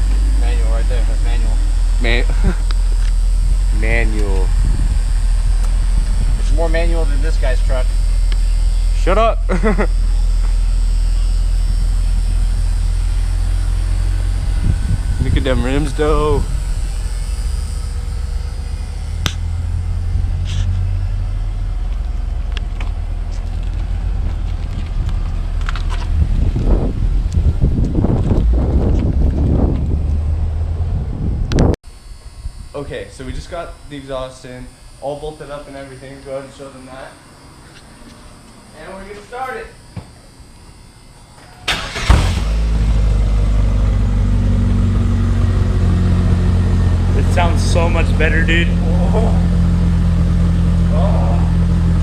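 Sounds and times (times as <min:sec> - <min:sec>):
car engine idling: 0:00.0 - 0:31.6, 0:41.7 - 0:52.0
engine cranking: 0:41.7 - 0:43.2.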